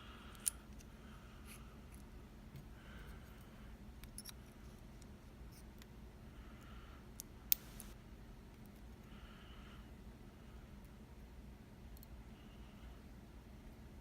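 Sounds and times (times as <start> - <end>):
small lock parts clicking: 4.0 - 4.4.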